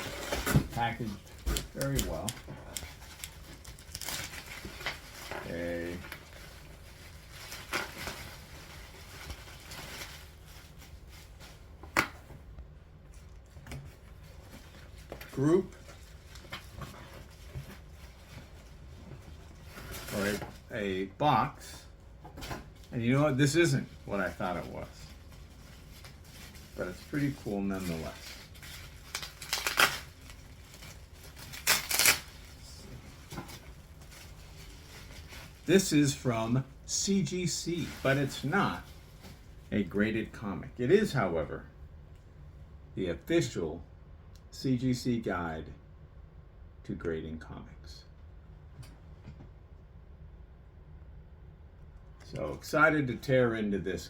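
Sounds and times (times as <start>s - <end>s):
bubble wrap rustling: 0.0s - 11.8s, 13.1s - 20.8s, 22.6s - 40.0s
bubble wrap snap: 29.1s - 30.0s, 31.5s - 32.3s.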